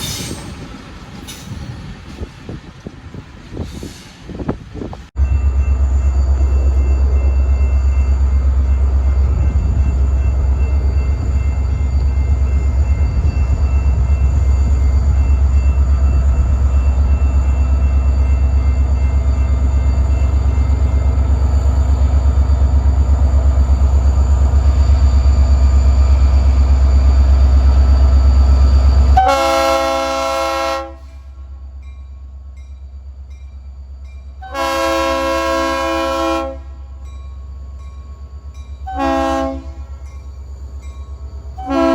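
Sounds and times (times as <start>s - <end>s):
freight train diesel rumble: 0.0s - 41.9s
locomotive horn: 29.2s - 31.3s, 34.4s - 36.8s, 38.9s - 39.9s, 41.6s - 41.9s.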